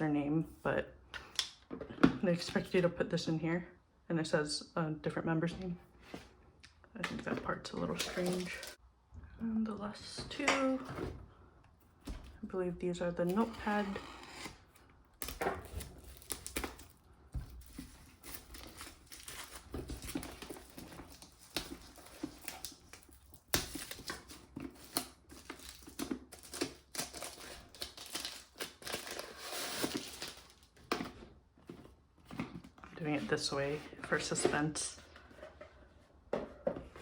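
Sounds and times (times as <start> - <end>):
packaging crinkling and tearing: 7.9 - 8.8, 13.3 - 31.0.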